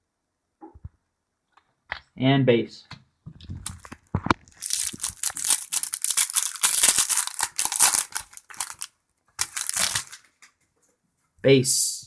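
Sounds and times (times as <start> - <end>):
card pack wrapper tearing: 3.6 - 10.3.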